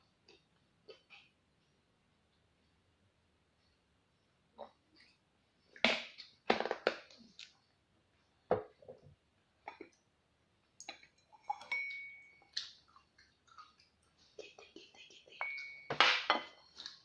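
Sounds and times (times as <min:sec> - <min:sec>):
dishes and utensils clinking: 0:11.0 - 0:12.6, 0:15.2 - 0:16.8.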